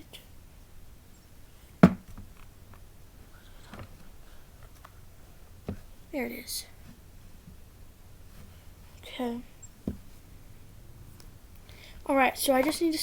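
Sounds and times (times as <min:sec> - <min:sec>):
sharp knock: 0:01.8 - 0:02.1.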